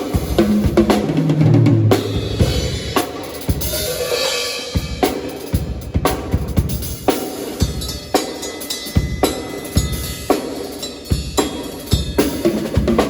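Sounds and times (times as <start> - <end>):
cymbal ringing: 2.4 - 5.6, 6.9 - 12.4.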